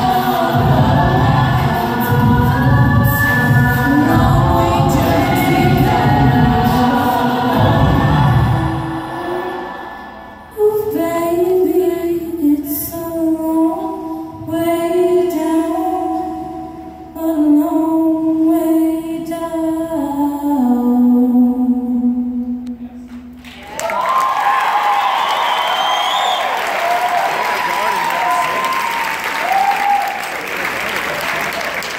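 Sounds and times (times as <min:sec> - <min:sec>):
vocal group singing in harmony: 0:00.0 - 0:16.5
audience applause and whoops: 0:23.4 - 0:31.9.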